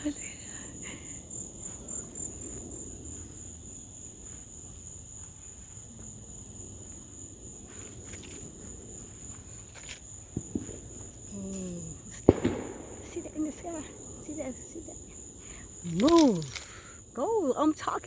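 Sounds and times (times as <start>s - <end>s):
high-pitched insect trill: 0.0s - 18.0s
faint pops: 12.1s - 14.1s.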